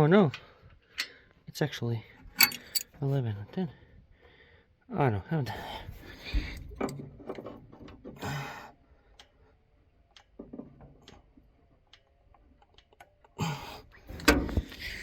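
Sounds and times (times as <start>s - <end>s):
wrenches tapping metal fittings: 2.4s - 2.9s.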